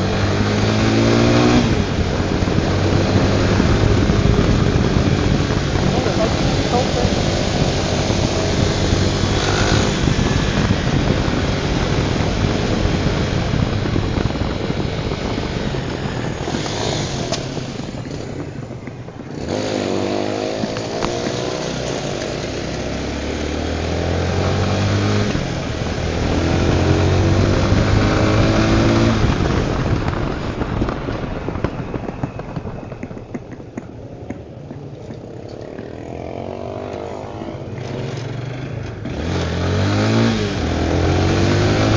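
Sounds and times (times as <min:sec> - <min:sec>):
wind rush on microphone: 0:00.0 - 0:37.9
motorcycle engine accelerating: 0:00.0 - 0:41.9.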